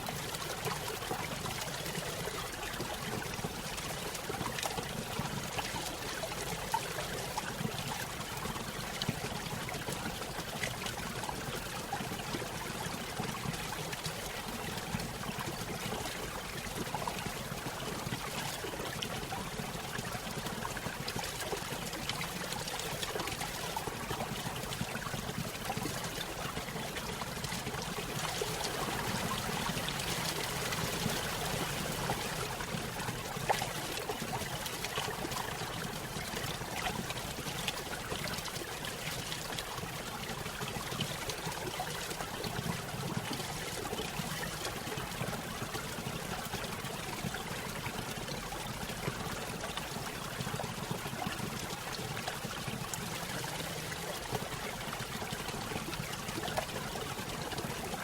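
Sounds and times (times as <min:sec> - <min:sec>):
stream splashing over small waterfall: 0:17.6 - 0:58.0.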